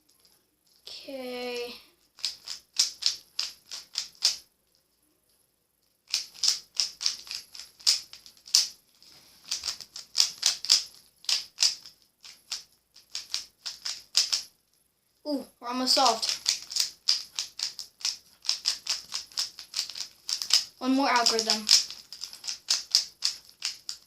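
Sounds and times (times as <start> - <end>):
puzzle cube plastic clicks: 2.0 - 4.4, 6.1 - 8.8, 9.4 - 14.5, 16.0 - 24.0.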